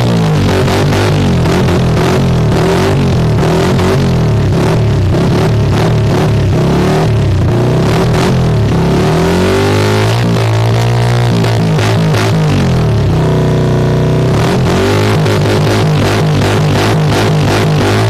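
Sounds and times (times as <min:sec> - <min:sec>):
motorcycle engine revving: 0:00.0 - 0:18.0.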